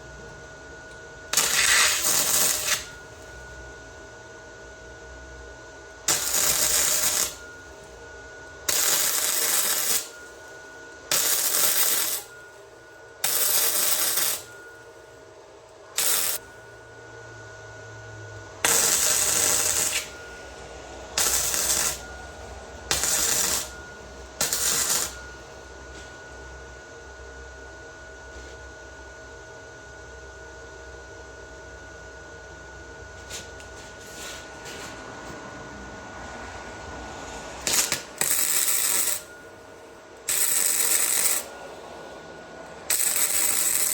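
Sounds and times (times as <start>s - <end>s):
welding arc bursts: 1.3s - 3.0s, 6.1s - 7.4s, 8.7s - 10.1s, 11.1s - 12.3s, 13.2s - 14.5s, 16.0s - 16.4s, 18.6s - 20.1s, 21.2s - 22.0s, 22.9s - 23.8s, 24.4s - 25.2s, 37.6s - 39.3s, 40.3s - 41.5s, 42.9s - 43.9s
faint steady high tone: 6.2s - 26.8s.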